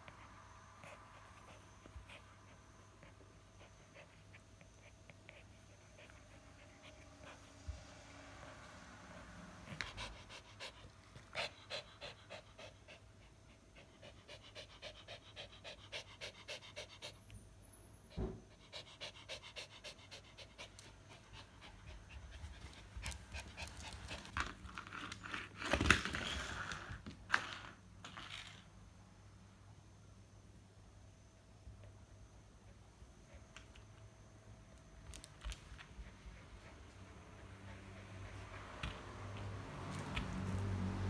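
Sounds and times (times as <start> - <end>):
dog panting: 0.8 - 8.6, 9.6 - 17.3, 18.1 - 24.6, 35.4 - 41.0.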